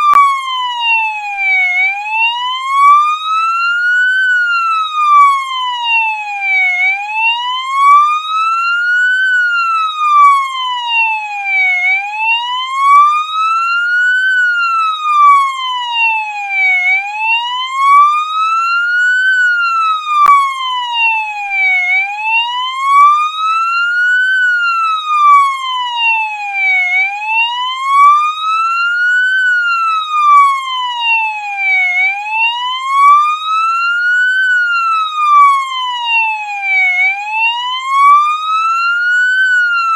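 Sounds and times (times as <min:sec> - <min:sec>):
police siren wailing: 0:00.0 - 0:39.9.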